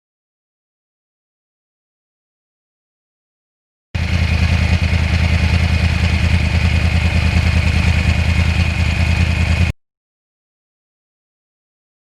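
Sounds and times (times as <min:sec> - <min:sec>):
motorcycle engine running: 0:04.0 - 0:09.8.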